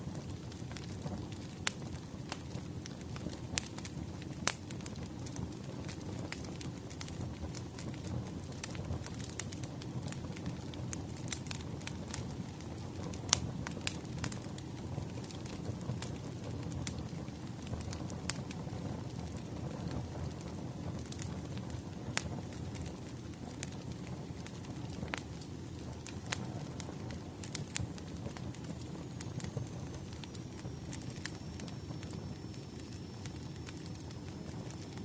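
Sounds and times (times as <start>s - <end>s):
wood fire crackling: 0.0s - 35.0s.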